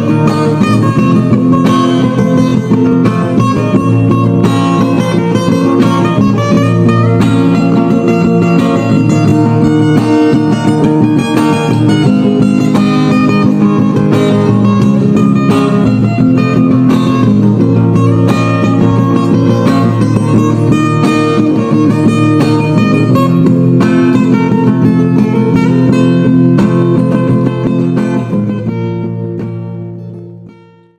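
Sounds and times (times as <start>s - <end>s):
fingerpicked guitar music: 0.0s - 30.9s.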